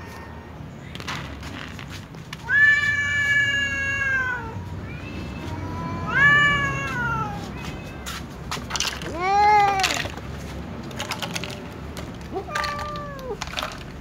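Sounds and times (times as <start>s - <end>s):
cats meowing: 0.0s - 1.3s, 2.3s - 10.2s, 12.0s - 13.8s.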